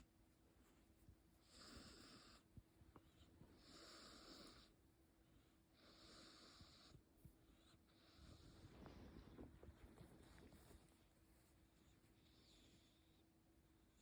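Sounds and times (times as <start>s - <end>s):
cat snoring faintly: 1.4s - 2.5s, 3.2s - 4.8s, 5.7s - 9.6s.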